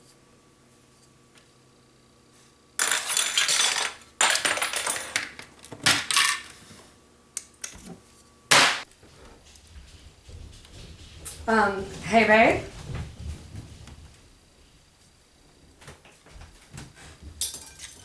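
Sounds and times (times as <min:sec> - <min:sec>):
small metal objects clattering: 0:02.8 - 0:06.6.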